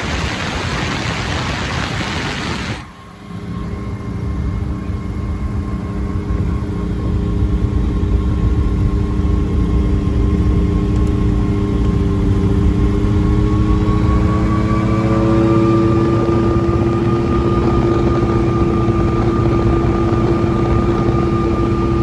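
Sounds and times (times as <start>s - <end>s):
loud hiss: 0.0s - 2.9s
aircraft engine and propeller: 0.0s - 22.0s.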